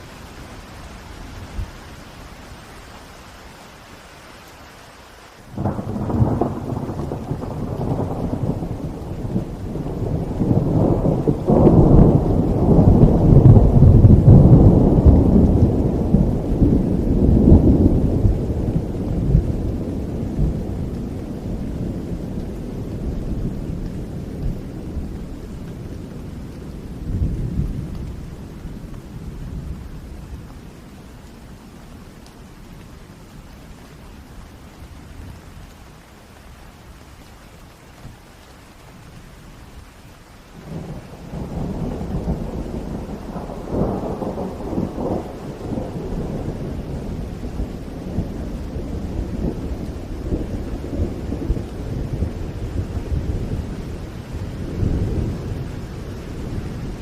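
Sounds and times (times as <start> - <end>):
steady rain: 0.0 - 57.0
rolling thunder: 5.5 - 30.6, 40.6 - 57.0.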